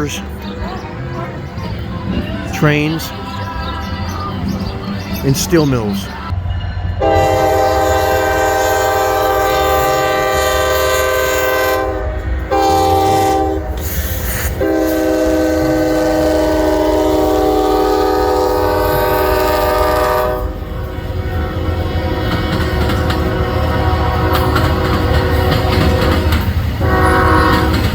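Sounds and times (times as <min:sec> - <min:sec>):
train rumbling: 0:00.0 - 0:27.9
locomotive air horn blasts: 0:07.0 - 0:20.6, 0:23.1 - 0:27.9.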